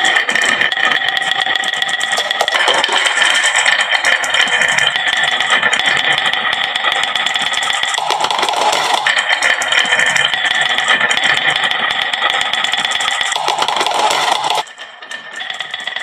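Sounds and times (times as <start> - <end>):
marbles rattling down wooden run: 2.2 - 3.6, 8.0 - 9.1.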